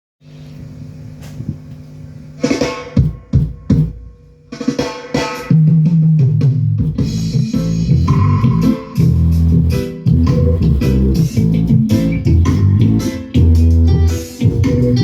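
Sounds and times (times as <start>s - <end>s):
drum hits: 2.4s - 15.0s
heavy bass line: 5.6s - 15.0s.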